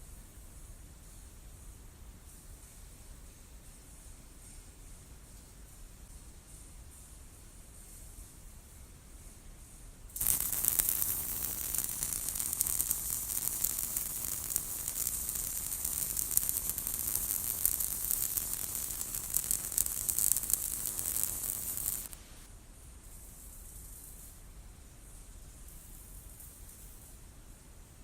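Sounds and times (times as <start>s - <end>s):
welding arc crackling sizzle: 10.2s - 22.5s.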